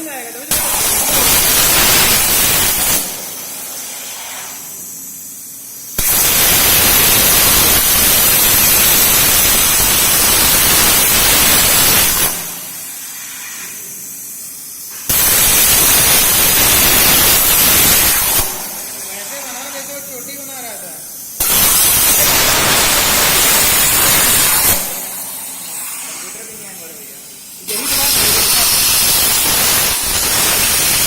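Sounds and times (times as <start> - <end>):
plasma cutter hissing: 0.0 - 31.0.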